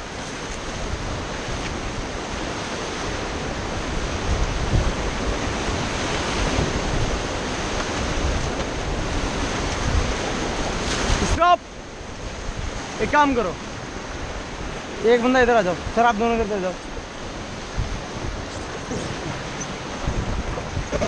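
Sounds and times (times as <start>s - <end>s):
whitewater rushing: 0.0s - 21.0s
wind buffeting microphone: 0.0s - 21.0s.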